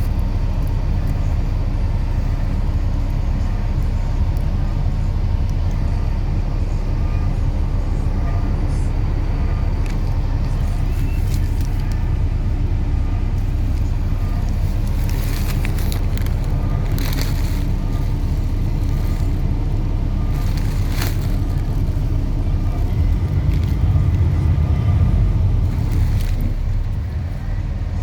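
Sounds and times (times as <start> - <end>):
train rumbling past: 5.7 - 28.0.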